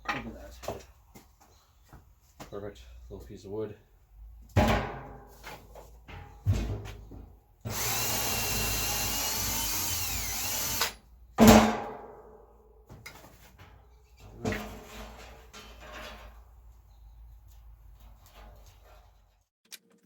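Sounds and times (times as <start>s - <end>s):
power drill drilling wood: 7.7s - 11.0s.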